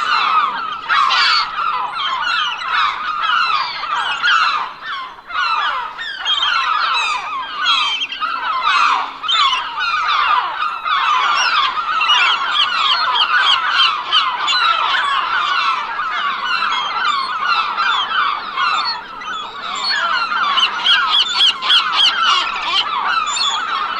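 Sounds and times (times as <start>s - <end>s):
gulls calling: 0.0s - 23.9s.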